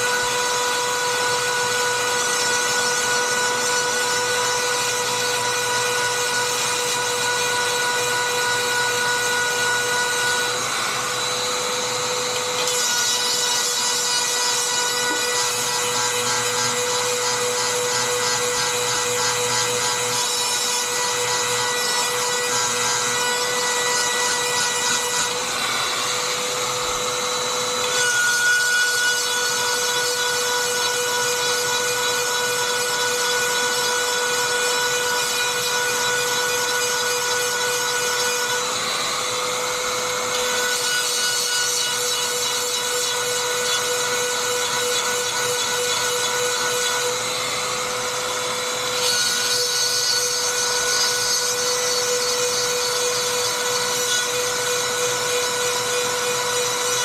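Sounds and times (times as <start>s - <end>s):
rotary tool grinding with high whine: 0.0s - 57.0s.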